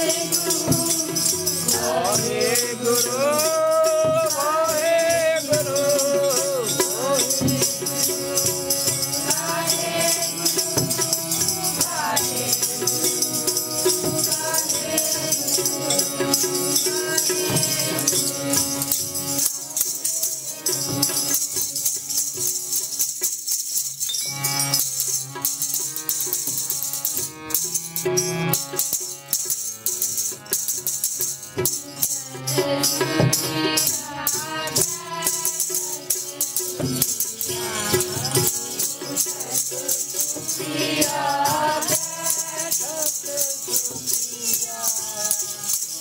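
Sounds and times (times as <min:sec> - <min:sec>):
devotional singing: 0:00.0 - 0:21.9, 0:32.0 - 0:46.0
jingling hand percussion: 0:00.0 - 0:46.0.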